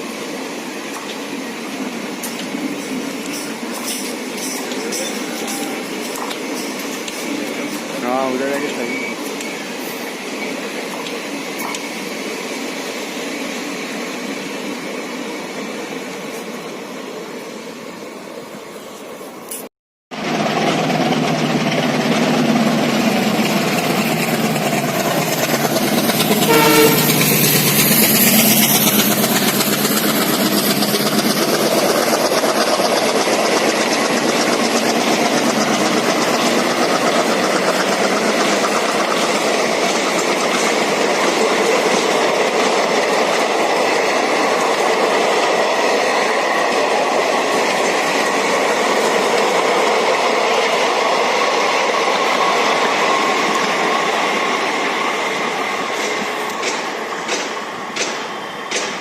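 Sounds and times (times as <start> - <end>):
train coaches clickety-clack: 0.0 - 17.0, 18.7 - 59.0
diesel locomotive engine passing: 0.0 - 19.5, 20.1 - 59.0
train horn: 26.4 - 27.4.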